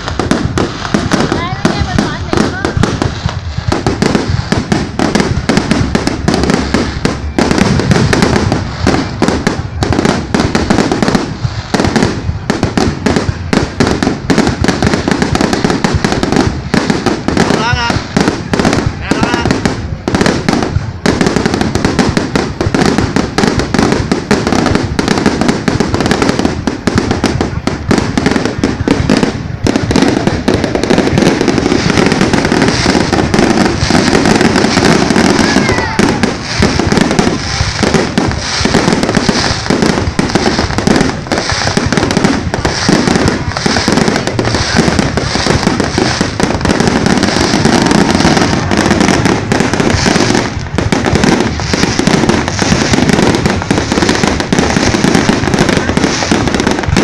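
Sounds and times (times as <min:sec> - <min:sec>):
fireworks bangs and crackles: 0:00.0 - 0:57.0.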